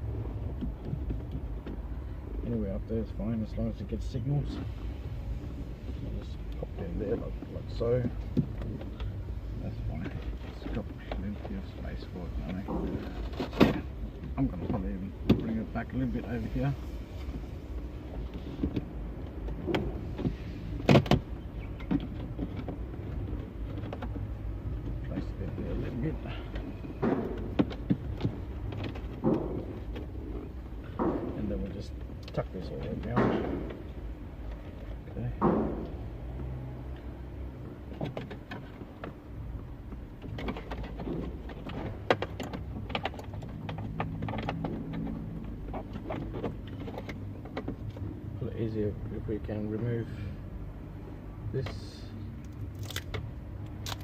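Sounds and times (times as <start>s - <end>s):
low steady hum: 0.0s - 54.0s.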